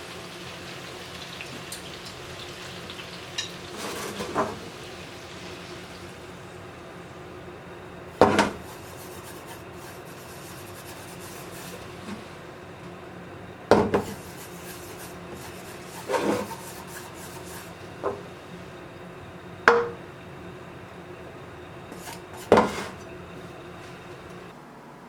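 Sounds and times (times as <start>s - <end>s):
utensil scraping cookware: 3.4s - 4.7s, 8.2s - 12.5s, 13.7s - 18.3s, 21.9s - 23.1s.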